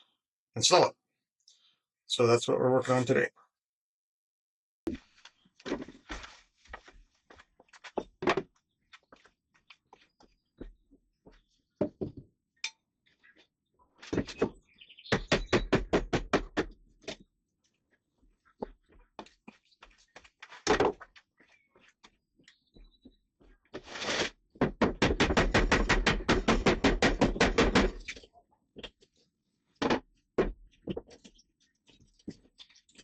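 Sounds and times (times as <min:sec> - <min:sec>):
knocking and prying wood: 0:14.1 - 0:17.2, 0:24.5 - 0:28.2, 0:29.8 - 0:31.2.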